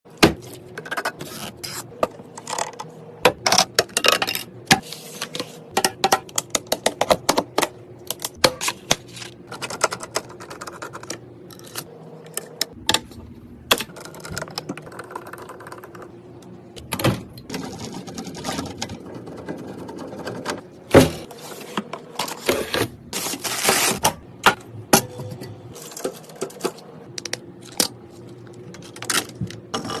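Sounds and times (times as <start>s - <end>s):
computer parts clicking and scraping: 17.5s - 20.6s.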